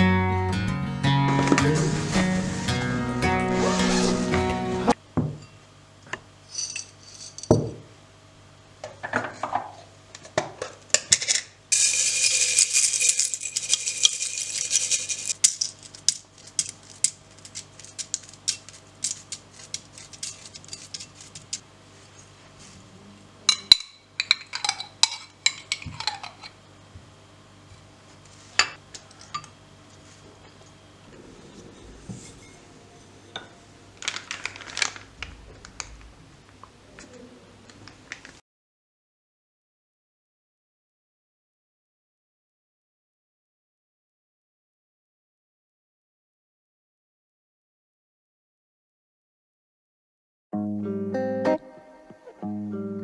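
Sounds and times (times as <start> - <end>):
dishes and cutlery clinking: 23.5 - 26.6.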